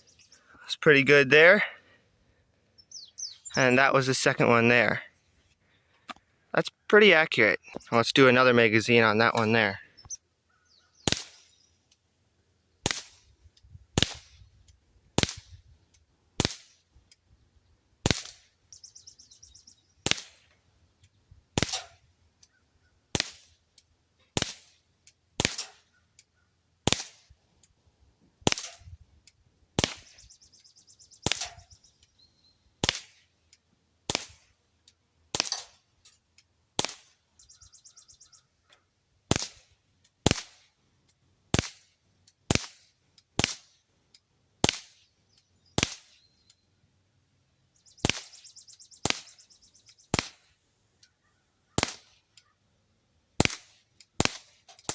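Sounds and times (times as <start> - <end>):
bb pistol firing sharp pops: 11.0 - 11.6, 12.8 - 16.9, 18.0 - 18.6, 20.0 - 23.6, 24.3 - 27.4, 28.4 - 32.1, 32.8 - 34.6, 35.3 - 35.9, 36.8 - 37.5, 39.3 - 40.7, 41.5 - 43.8, 44.6 - 45.1, 45.7 - 46.3, 48.0 - 50.6, 51.7 - 52.5, 53.4 - 54.9.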